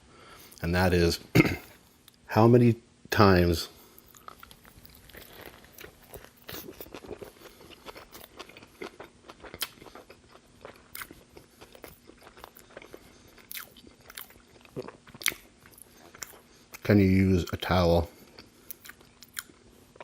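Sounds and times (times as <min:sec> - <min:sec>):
crunchy chewing mouth sounds: 0:04.0 - 0:16.8, 0:18.2 - 0:20.0.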